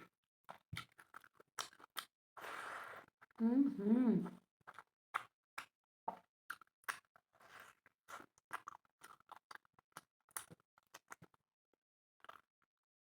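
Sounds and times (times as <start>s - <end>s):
person chewing food: 0.5s - 2.1s, 4.7s - 11.3s, 12.2s - 12.4s.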